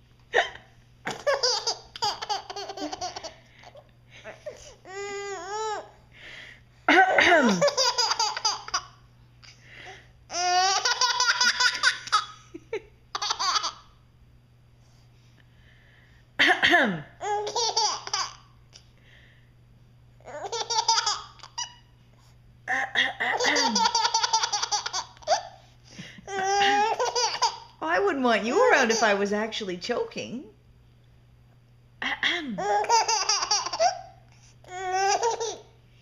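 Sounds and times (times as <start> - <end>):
baby laughing: 0.4 - 3.8, 6.9 - 9.0, 10.3 - 13.9, 17.2 - 18.5, 20.3 - 21.8, 22.7 - 25.6, 26.3 - 27.7, 32.6 - 35.7
woman coughing: 6.9 - 7.7, 16.4 - 17.1.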